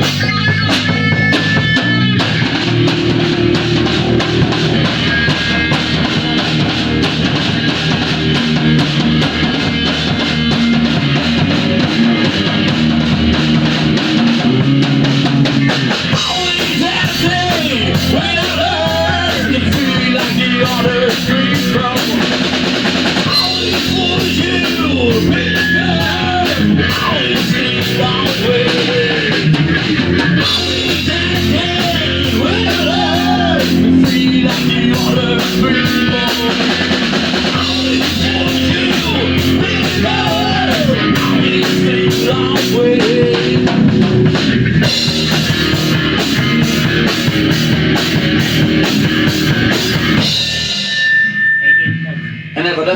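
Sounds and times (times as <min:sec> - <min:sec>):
drum kit: 0:00.0 - 0:52.6
bass guitar: 0:00.0 - 0:52.9
distorted electric guitar: 0:00.0 - 0:52.9
wavering melodic line: 0:02.3 - 0:06.7.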